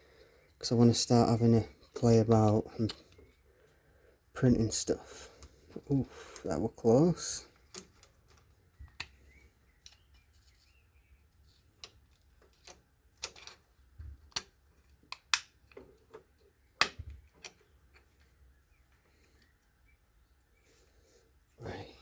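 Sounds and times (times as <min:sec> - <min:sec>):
small plastic parts clicking: 0:07.5 - 0:10.7, 0:11.5 - 0:19.7.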